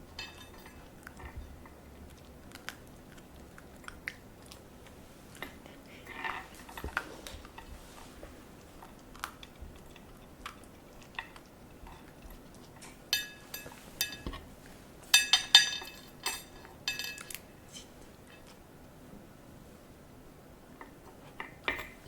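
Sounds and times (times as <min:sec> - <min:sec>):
dog crunching and chewing: 0:00.1 - 0:14.5.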